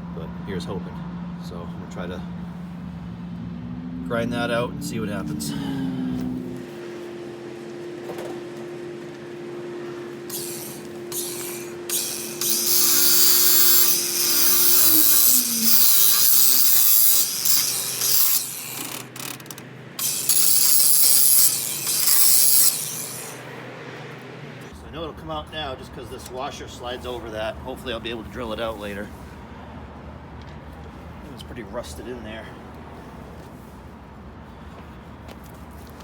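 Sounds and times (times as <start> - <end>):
grinder motor whine: 6.2 - 23.6
harsh high-pitched grinding: 10.1 - 23.5.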